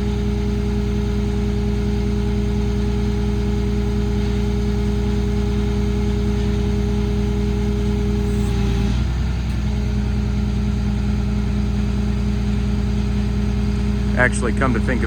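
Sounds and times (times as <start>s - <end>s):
diesel engine running: 0.0s - 15.0s
hydraulic tone: 5.0s - 9.6s.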